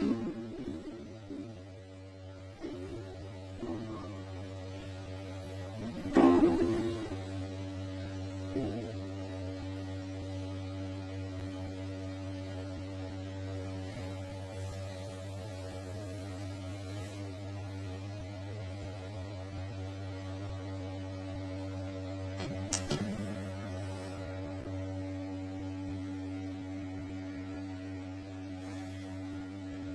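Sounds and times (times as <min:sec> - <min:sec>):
electrical hum: 0:00.0 - 0:29.9
brief knock: 0:22.4 - 0:23.3.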